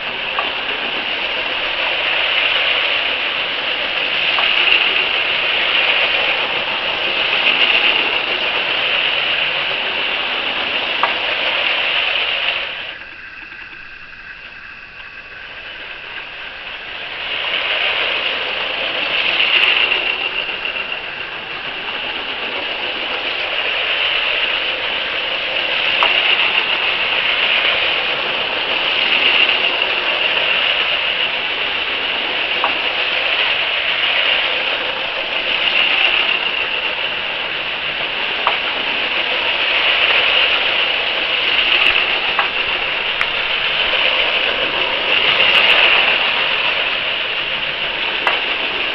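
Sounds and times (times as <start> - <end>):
faint clicks: 0.0 - 48.9
toy train motors whirring: 0.0 - 48.9
toy train wheels rattling: 0.0 - 48.9.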